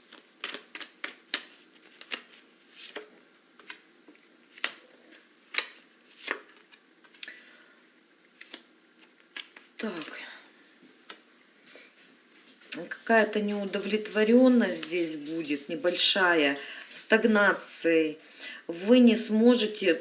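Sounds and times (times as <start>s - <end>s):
cards snapping and tapping: 0.1s - 3.8s, 4.5s - 4.8s, 5.5s - 7.4s, 9.3s - 9.7s.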